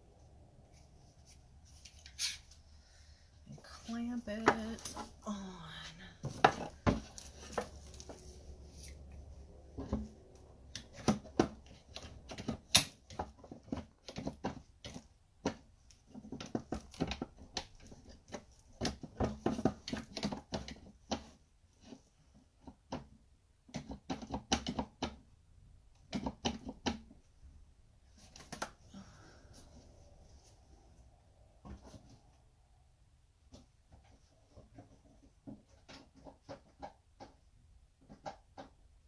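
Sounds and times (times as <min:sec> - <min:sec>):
hands handling wooden parts: 0:00.2 - 0:25.2, 0:33.4 - 0:39.0.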